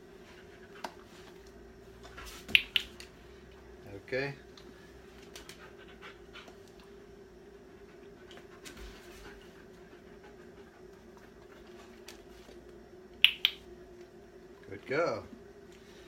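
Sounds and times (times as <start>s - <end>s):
dog-training clicker clicks: 2.6s - 3.0s, 13.2s - 13.6s
dog panting: 5.3s - 7.0s, 7.6s - 12.3s.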